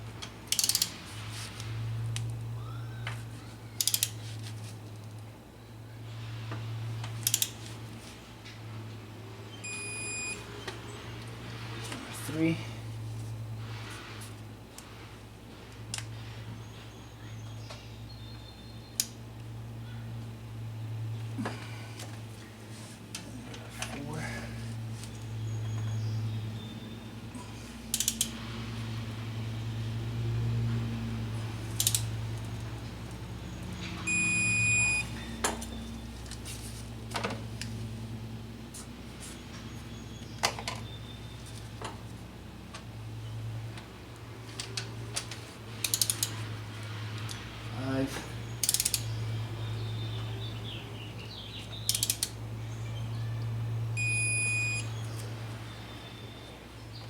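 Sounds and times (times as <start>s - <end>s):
steady low hum: 0.0s - 57.0s
torque wrench beeping: 9.6s - 10.4s, 34.0s - 35.3s, 54.0s - 55.0s.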